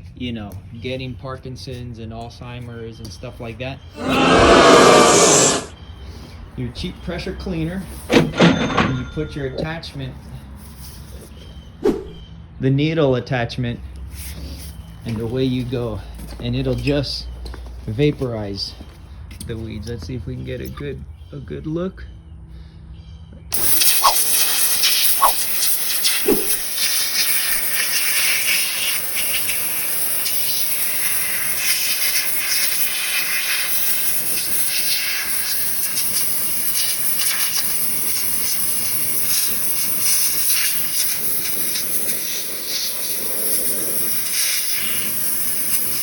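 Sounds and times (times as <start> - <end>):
pressure washer spray hissing: 23.6 - 46.0.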